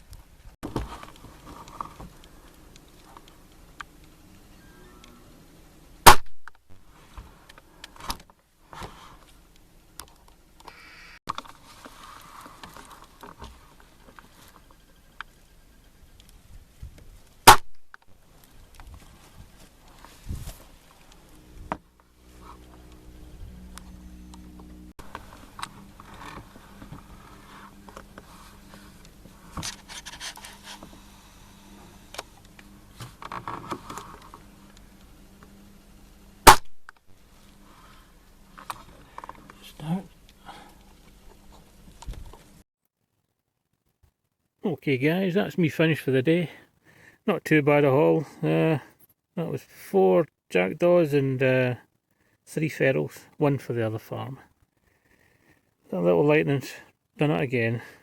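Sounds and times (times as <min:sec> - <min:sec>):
air rifle shot: 0:06.0 - 0:06.5, 0:17.4 - 0:17.8, 0:36.5 - 0:36.8
gear handling clicks and scrapes: 0:25.1 - 0:31.1.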